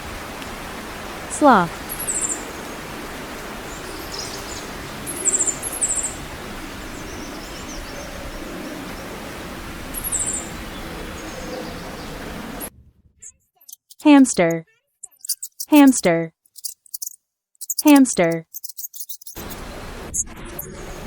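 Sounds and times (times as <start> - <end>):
outdoor ambience hiss: 0.0 - 12.7, 15.2 - 21.0
high-pitched chirping trills: 13.6 - 19.6.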